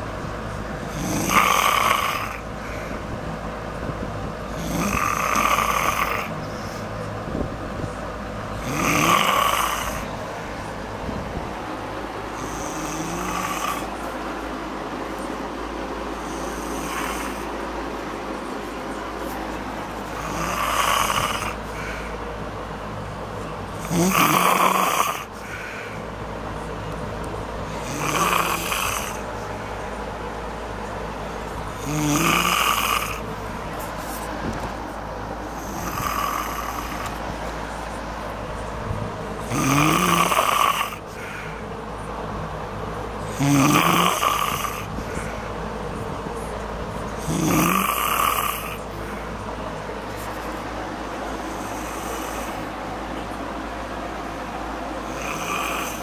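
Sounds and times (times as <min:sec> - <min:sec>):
woman snoring: 0:00.9 - 0:02.4, 0:04.5 - 0:06.4, 0:08.6 - 0:10.1, 0:12.4 - 0:14.0, 0:16.2 - 0:17.6, 0:20.0 - 0:22.0, 0:23.8 - 0:25.6, 0:27.8 - 0:29.3, 0:31.8 - 0:33.2, 0:35.5 - 0:37.2, 0:39.4 - 0:41.4, 0:43.3 - 0:45.3, 0:47.2 - 0:48.9, 0:55.0 - 0:56.0.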